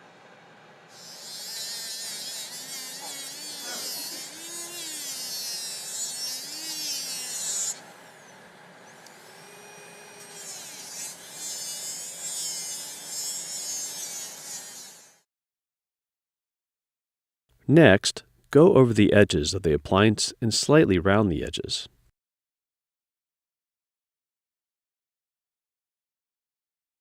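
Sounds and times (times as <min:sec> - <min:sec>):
handpiece motor whine: 0:00.9 - 0:15.2.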